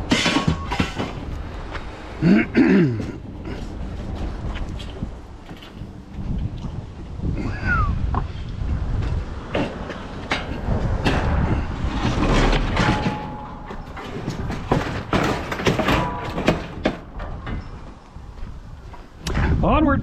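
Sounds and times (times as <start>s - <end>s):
scrap metal knocks and clanks: 0.0s - 1.8s, 8.2s - 19.6s
metallic ring: 12.8s - 14.2s.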